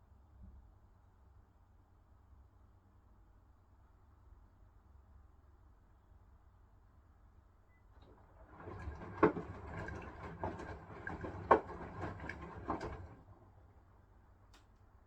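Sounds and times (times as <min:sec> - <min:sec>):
water and laundry swishing: 0:07.9 - 0:13.8
washing machine drum turning: 0:08.0 - 0:13.7.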